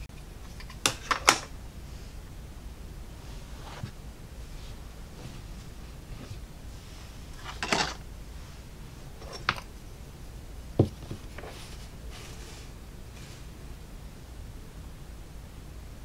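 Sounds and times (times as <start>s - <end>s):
rattly clatter: 7.4s - 8.0s.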